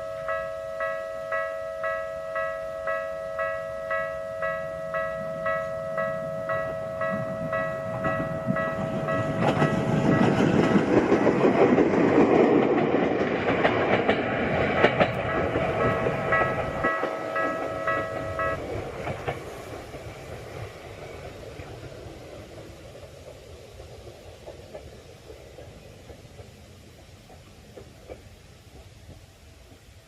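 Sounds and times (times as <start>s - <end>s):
level crossing alarm dinging: 0.0s - 10.3s, 15.8s - 18.8s
train rumble and wheel clacks: 0.0s - 30.0s.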